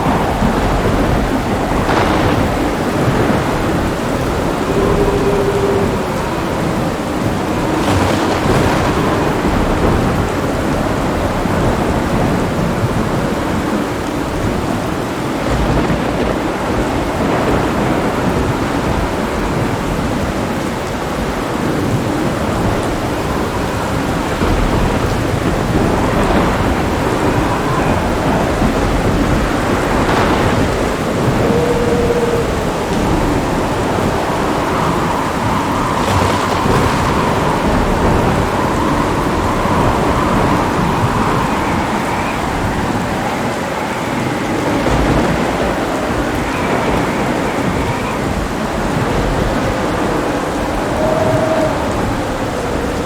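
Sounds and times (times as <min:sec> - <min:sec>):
heavy rain falling: 0:00.0 - 0:53.0
thunder rumbling: 0:00.0 - 0:53.0.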